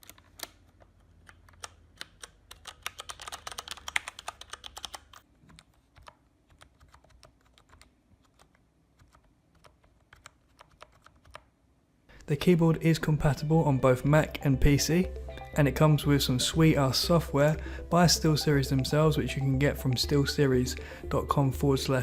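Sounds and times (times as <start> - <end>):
typing on computer keyboard: 0.0 - 11.5.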